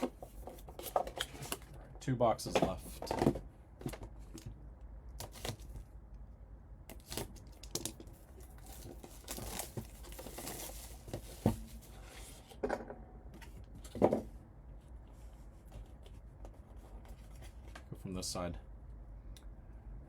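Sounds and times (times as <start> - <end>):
packaging tearing and crinkling: 6.9 - 11.0.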